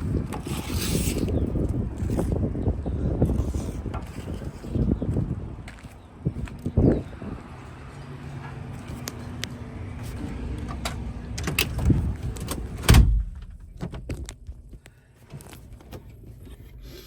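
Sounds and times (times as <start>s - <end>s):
idling engine hum: 4.7s - 13.8s
truck door clicks and knocks: 10.8s - 14.3s
truck door slamming: 11.5s - 14.1s.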